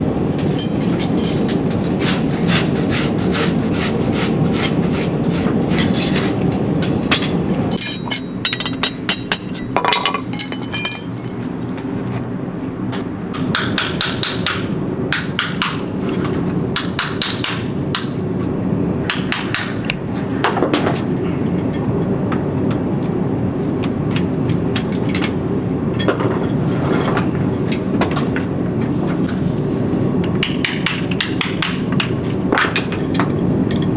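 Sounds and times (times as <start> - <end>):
steady low hum: 0.0 - 33.9
hammer striking steel: 7.1 - 11.4, 13.3 - 15.9, 16.8 - 18.3, 19.1 - 20.0, 30.4 - 33.2.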